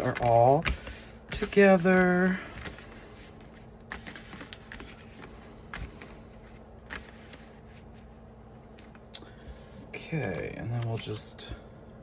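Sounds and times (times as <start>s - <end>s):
handling cd cases: 0.0s - 8.0s.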